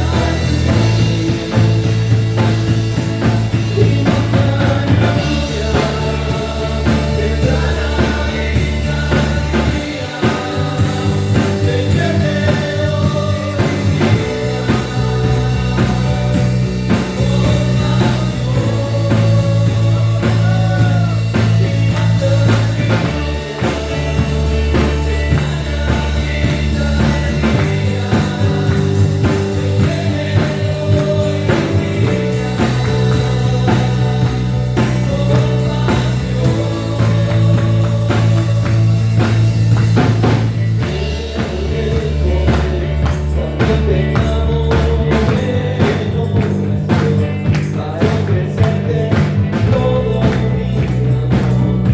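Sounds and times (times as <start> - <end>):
bass guitar: 0.0 - 51.9
drum kit: 0.0 - 51.9
guitar: 0.0 - 51.9
person singing: 0.0 - 51.9.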